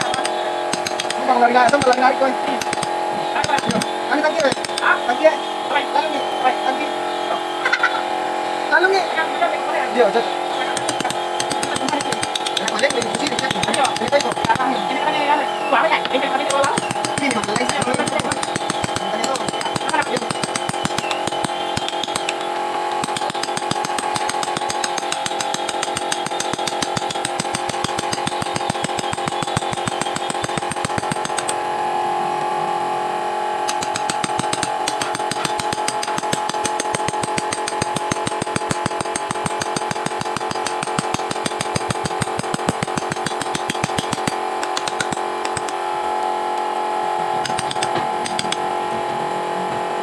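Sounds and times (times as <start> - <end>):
wood-carving tool rapid clicks: 0.0 - 5.0, 10.7 - 14.8, 16.1 - 31.6, 33.6 - 45.8, 47.4 - 48.7
steady hum: 0.0 - 50.0.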